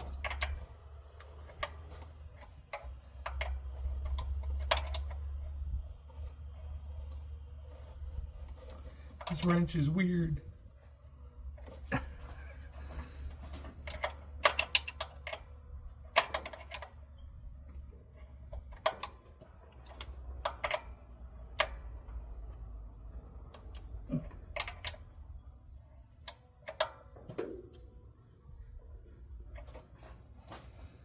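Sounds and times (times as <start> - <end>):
metallic clicks of hand tools: 0.0 - 5.6, 13.7 - 17.3, 18.2 - 22.7, 23.3 - 25.2
low steady hum: 0.0 - 31.0.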